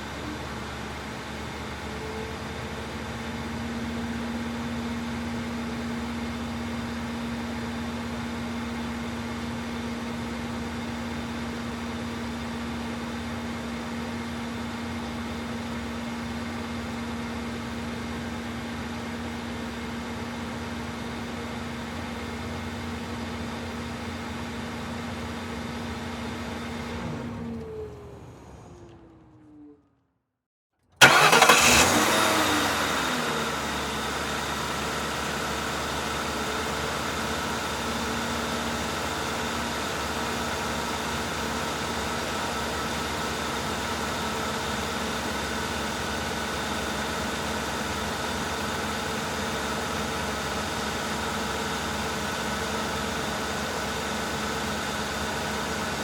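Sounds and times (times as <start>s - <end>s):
engine shutting off whine: 0.0s - 30.0s, 31.0s - 56.0s
car engine idling: 31.0s - 56.0s.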